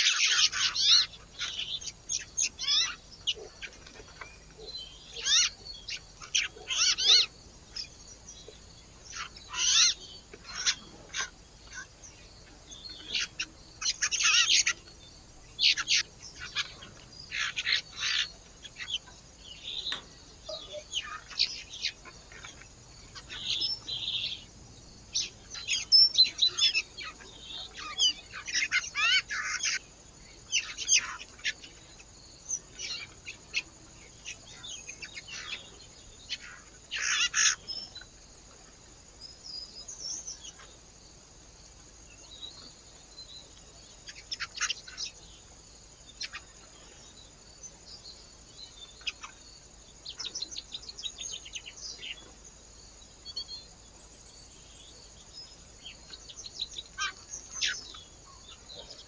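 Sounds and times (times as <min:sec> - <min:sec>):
small birds chirping: 0:00.0 - 0:59.0.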